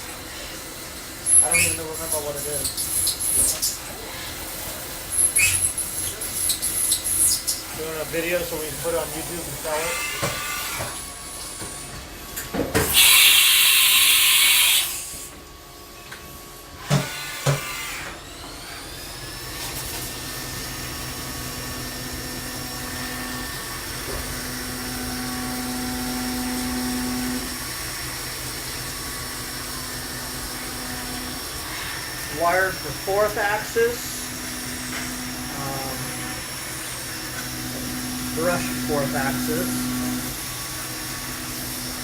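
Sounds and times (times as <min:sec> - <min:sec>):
low machine hum: 0:19.3 - 0:42.0
spindle whine: 0:28.8 - 0:42.0.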